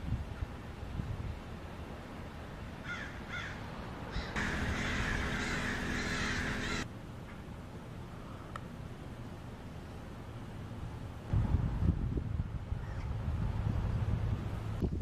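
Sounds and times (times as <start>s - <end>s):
parrot screeching: 4.2s - 6.8s
parrots squawking: 4.2s - 6.8s.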